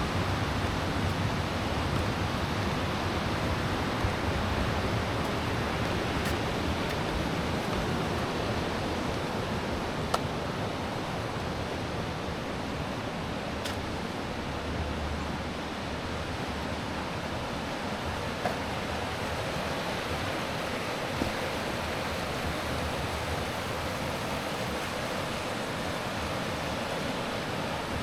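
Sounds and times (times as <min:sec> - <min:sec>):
steady low rushing noise: 0:00.0 - 0:10.0.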